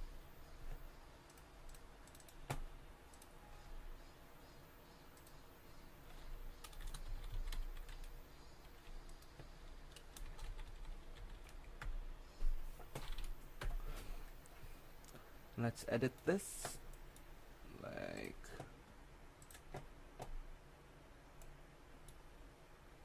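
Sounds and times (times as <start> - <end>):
low steady hum: 0.0 - 23.0
keyboard typing: 1.2 - 3.4, 6.0 - 12.0, 12.8 - 13.8, 19.4 - 20.4.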